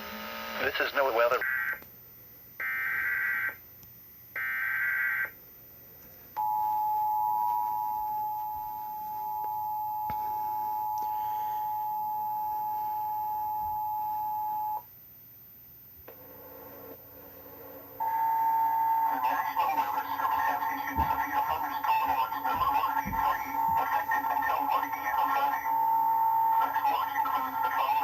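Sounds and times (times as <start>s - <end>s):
two-tone attention signal: 18.0s - 19.1s.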